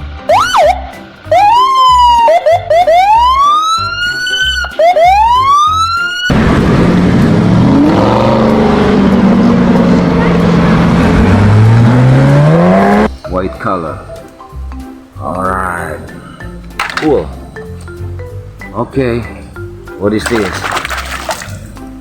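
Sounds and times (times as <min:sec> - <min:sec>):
background music beat: 0:00.0 - 0:22.0
police siren wailing: 0:00.2 - 0:13.1
loud steady rushing noise: 0:06.3 - 0:13.1
low hum: 0:06.3 - 0:13.2.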